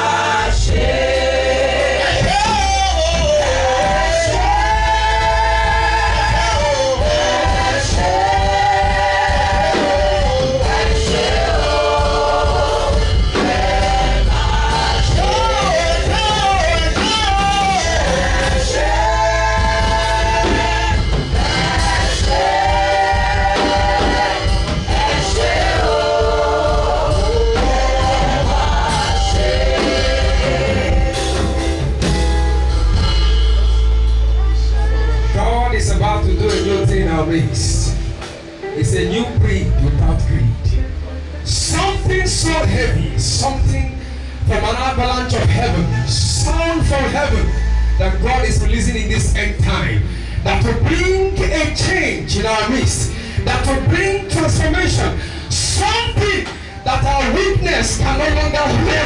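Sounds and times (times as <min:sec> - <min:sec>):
band with heavy bass: 0:00.0 - 0:59.0
person singing gospel: 0:00.0 - 0:59.0.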